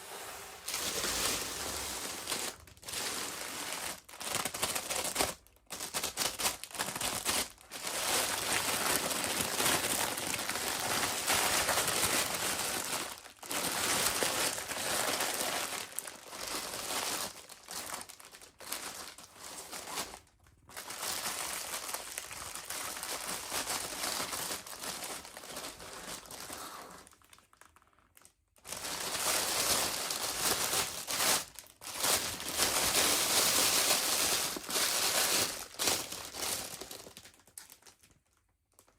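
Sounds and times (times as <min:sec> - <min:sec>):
packaging crinkling and rustling: 0:00.1 - 0:38.9.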